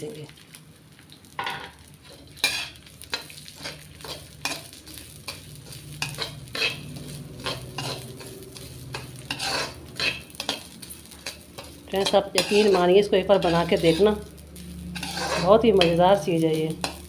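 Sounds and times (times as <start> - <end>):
faint sizzle of frying: 0.0 - 17.0
ladle scraping a pan: 2.0 - 4.6, 5.3 - 14.2, 14.9 - 16.0.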